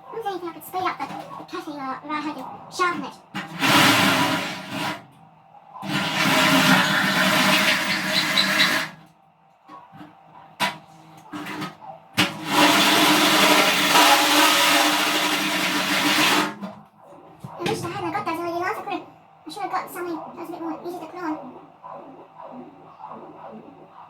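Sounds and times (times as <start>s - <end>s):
drill cutting sheet steel: 3.5s - 5.0s, 5.8s - 9.0s, 12.2s - 16.6s.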